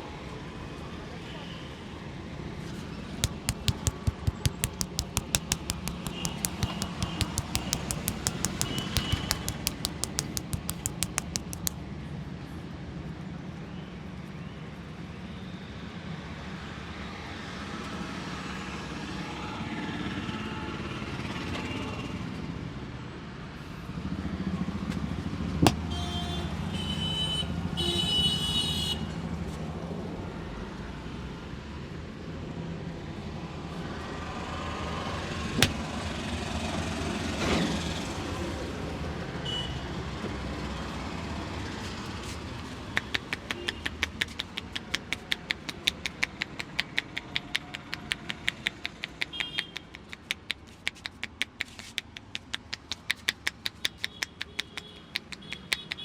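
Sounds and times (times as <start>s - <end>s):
quick even taps: 3.2s - 11.8s, 43.0s - 56.0s
sharp slaps: 3.2s - 11.8s, 35.6s - 35.8s, 43.0s - 56.0s
street traffic noise: 41.8s - 56.0s.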